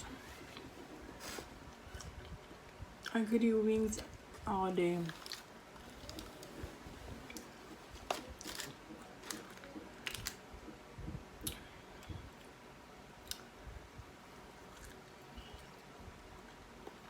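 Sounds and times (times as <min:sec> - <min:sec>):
chewing: 0:14.6 - 0:15.8.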